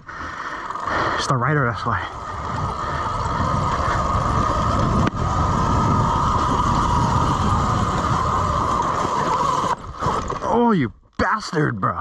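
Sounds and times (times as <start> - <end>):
electric motor whining: 0.0 - 10.6
low rumbling noise: 0.0 - 10.7.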